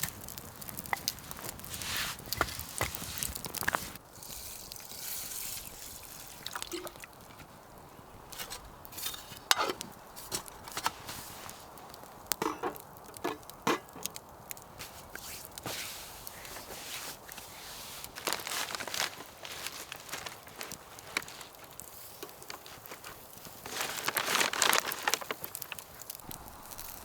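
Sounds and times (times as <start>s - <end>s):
cookware clicks and knocks: 12.4s - 13.9s.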